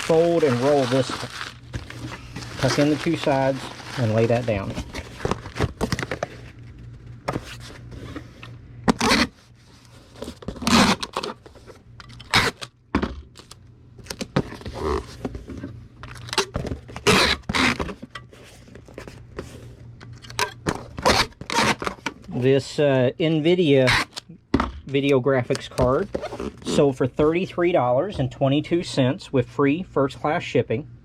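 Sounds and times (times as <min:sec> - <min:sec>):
paper and cardboard crinkling: 0:00.0 - 0:12.6.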